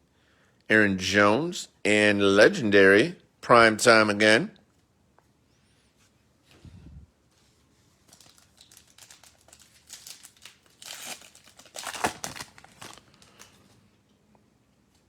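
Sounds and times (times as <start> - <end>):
plastic wrapper tearing and crinkling: 8.0 - 13.7.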